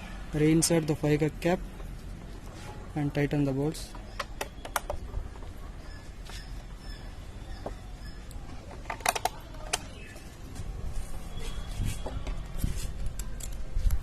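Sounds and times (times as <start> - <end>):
plastic clicks and taps: 3.9 - 5.1, 8.7 - 9.9.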